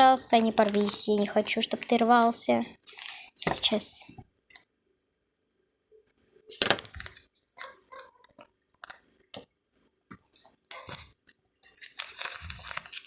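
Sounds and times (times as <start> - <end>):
sticker packet crinkling and tearing: 0.0 - 3.3, 6.5 - 9.0, 10.2 - 13.0.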